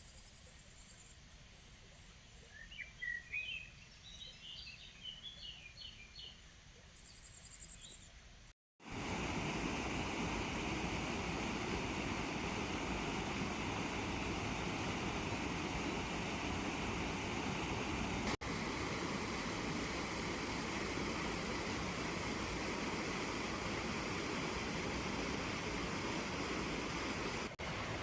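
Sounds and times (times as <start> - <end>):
songbird chirping: 0.0 - 8.3
river water rushing: 8.8 - 28.0.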